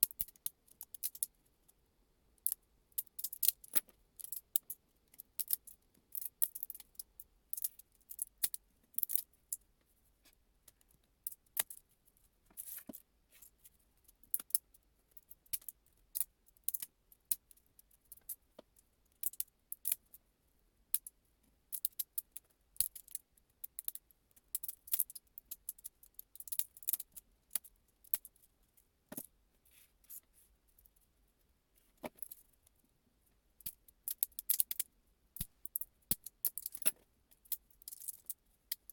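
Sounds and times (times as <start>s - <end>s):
small hard parts clicking and clinking: 0.0s - 1.4s, 2.4s - 9.6s, 20.9s - 28.5s, 33.6s - 38.9s.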